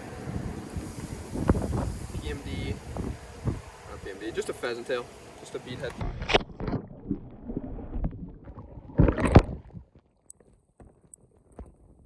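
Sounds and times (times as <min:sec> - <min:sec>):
loud watery rush: 0:00.0 - 0:09.7
water gurgling: 0:05.2 - 0:12.0
muffled underwater knocks: 0:05.9 - 0:10.0.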